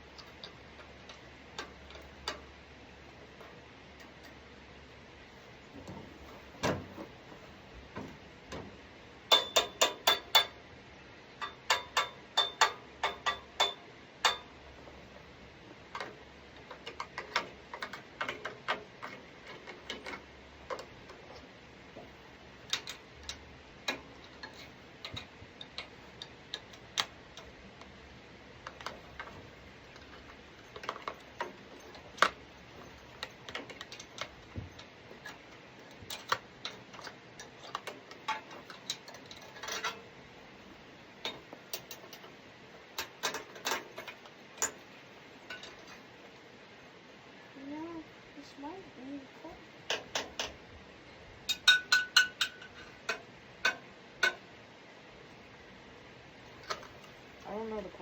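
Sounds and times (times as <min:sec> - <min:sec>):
hand tools clicking on metal: 0:09.3 - 0:10.6, 0:11.4 - 0:14.6, 0:15.9 - 0:21.5, 0:22.6 - 0:27.9, 0:28.6 - 0:40.1, 0:41.2 - 0:44.8, 0:51.5 - 0:54.5.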